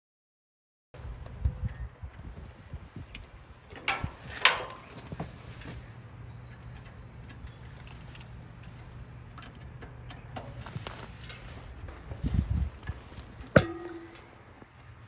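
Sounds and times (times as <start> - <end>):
steady low hum: 1.0 - 15.0
small clicks and knocks: 6.4 - 11.6
metallic clank on sheet metal: 13.6 - 14.3.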